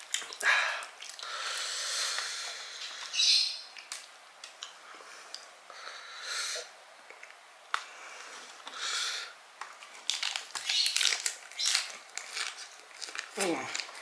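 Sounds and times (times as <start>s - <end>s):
breathing through the nose: 0.4s - 3.1s
crunchy chewing: 9.7s - 14.0s.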